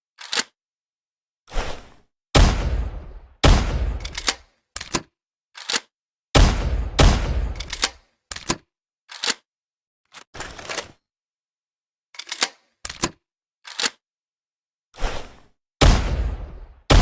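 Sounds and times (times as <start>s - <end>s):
shotgun action clicks and clacks: 0.2s - 0.6s, 3.6s - 5.9s, 7.0s - 9.4s, 12.2s - 14.0s.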